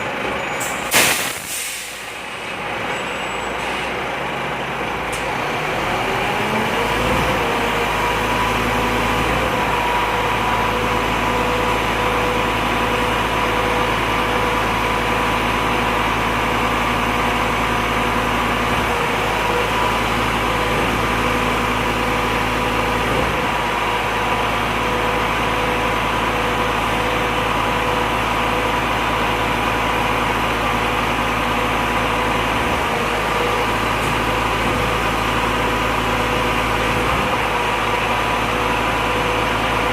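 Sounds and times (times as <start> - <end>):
truck engine whine: 0.0 - 39.9.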